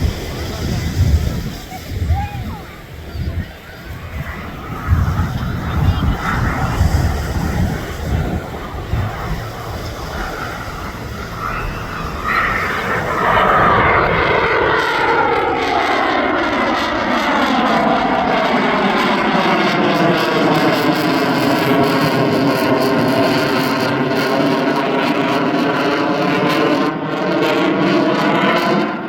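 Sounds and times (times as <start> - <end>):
wind rumble on microphone: 0.0 - 15.9
jet engines passing overhead: 0.0 - 29.0.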